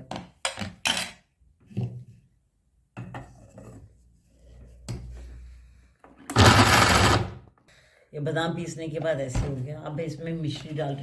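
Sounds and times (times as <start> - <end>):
mixer grinder rushing burst: 6.3 - 7.4.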